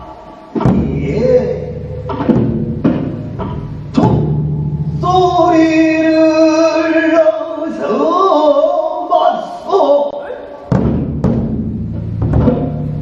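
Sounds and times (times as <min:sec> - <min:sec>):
big drum strikes: 0:00.5 - 0:06.3, 0:10.7 - 0:13.0.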